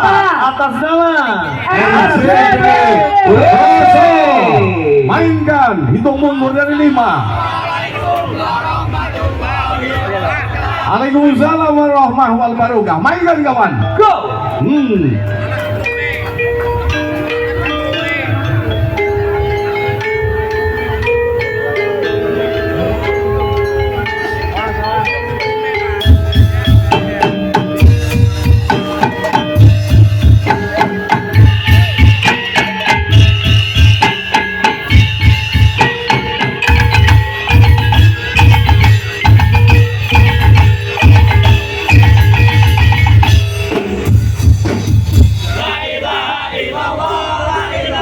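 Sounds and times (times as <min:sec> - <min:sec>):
melodic percussion line: 0:00.0 - 0:48.0
heavy drum beats: 0:25.3 - 0:45.8.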